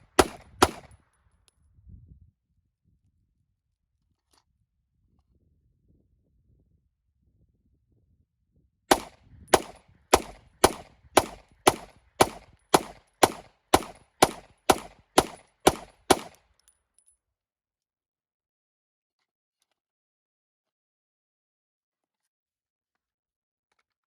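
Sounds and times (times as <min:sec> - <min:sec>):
gunshots in rapid string: 0:00.0 - 0:00.9, 0:08.9 - 0:16.4.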